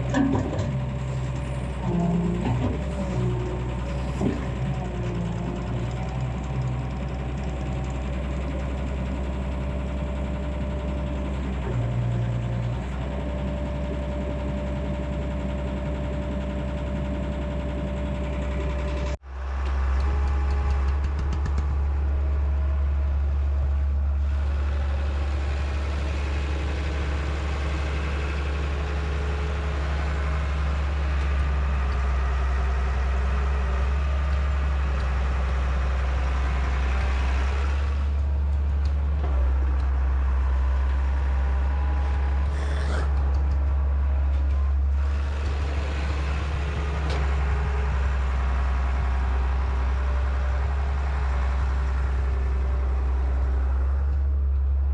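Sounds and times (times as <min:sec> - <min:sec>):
diesel excavator engine running: 0:00.0 - 0:54.9.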